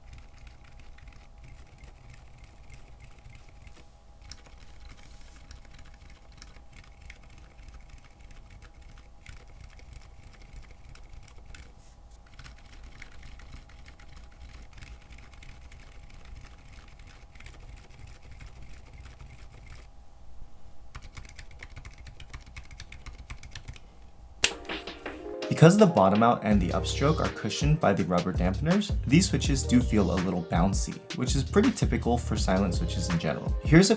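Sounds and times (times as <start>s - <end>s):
muted keyboard typing: 0.0s - 19.9s, 20.9s - 33.9s
steady low hum: 23.3s - 33.9s.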